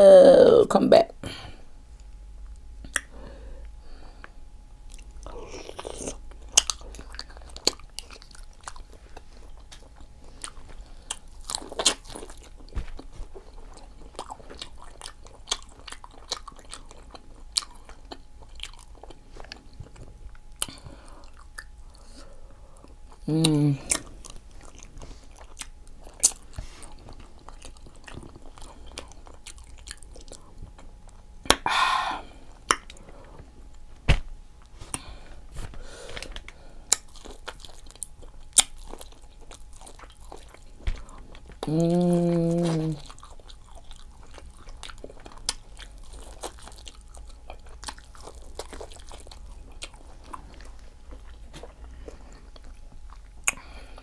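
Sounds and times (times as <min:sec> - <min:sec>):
person humming: 0:00.0 - 0:00.7, 0:23.2 - 0:24.0, 0:41.6 - 0:43.0
close chewing and mouth smacks: 0:02.0 - 0:31.6, 0:32.5 - 0:54.0.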